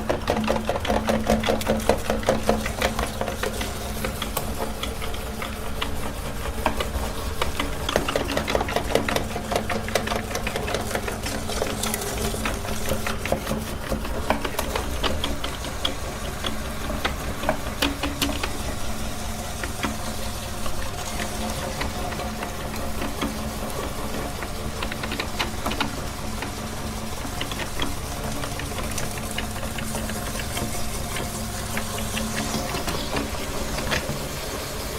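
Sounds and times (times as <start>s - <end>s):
electric meat grinder running: 0.0s - 34.9s
rapid irregular clicking: 0.0s - 34.9s.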